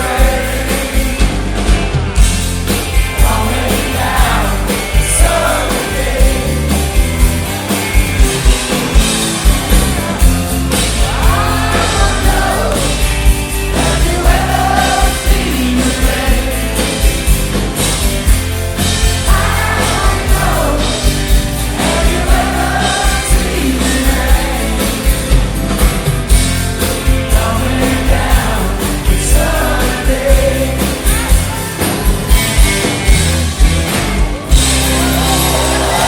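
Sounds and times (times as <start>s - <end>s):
person singing lead vocal: 0.0s - 1.3s, 3.2s - 6.8s, 11.0s - 13.0s, 13.8s - 17.0s, 19.2s - 25.1s, 27.2s - 32.0s
bass: 0.0s - 36.0s
live rock band playing: 0.0s - 36.0s
steady drum beat: 0.0s - 36.0s.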